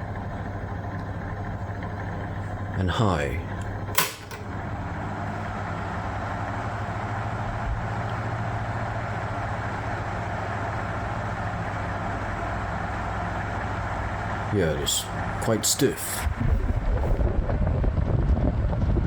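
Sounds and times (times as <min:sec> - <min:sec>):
fan motor hum: 0:00.0 - 0:19.0
rush of air from fan: 0:15.4 - 0:19.0.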